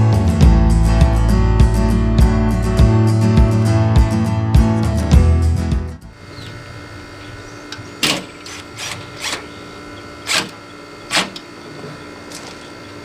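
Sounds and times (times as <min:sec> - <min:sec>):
faint steady hum: 0:06.0 - 0:13.0
power screwdriver driving screws: 0:07.7 - 0:11.6.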